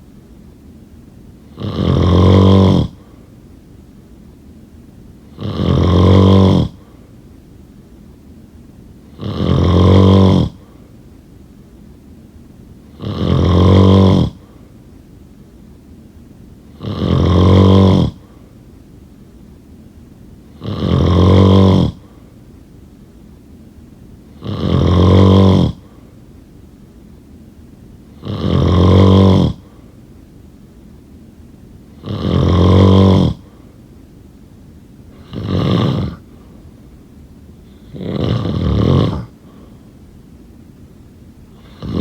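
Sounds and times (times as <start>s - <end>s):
faint background noise: 0.0s - 42.0s
person snoring: 1.5s - 3.2s, 5.3s - 7.0s, 9.1s - 10.8s, 12.9s - 14.6s, 16.7s - 18.4s, 20.5s - 22.2s, 24.3s - 26.0s, 28.2s - 29.8s, 32.0s - 33.6s, 35.1s - 36.4s, 37.6s - 39.7s, 41.5s - 42.0s.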